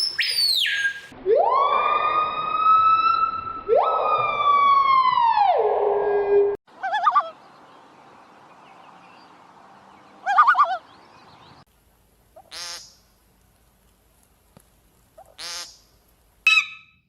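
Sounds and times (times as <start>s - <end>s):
bird whistling: 0.0s - 1.1s, 16.5s - 17.0s
bird warbling calls: 10.1s - 11.5s, 16.5s - 16.9s
bird rasping call: 16.5s - 17.0s.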